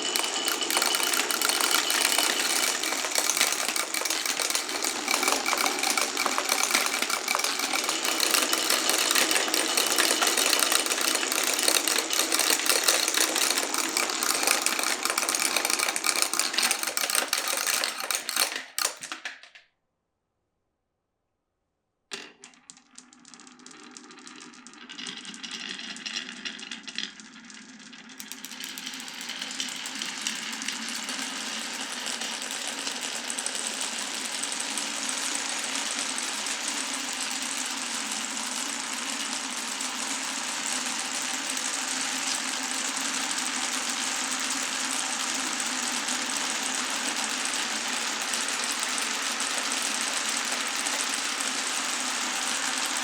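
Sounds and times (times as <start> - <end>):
scattered clicks: 0.0 - 19.3
marbles rolling down wooden run: 0.0 - 19.6, 48.2 - 52.9.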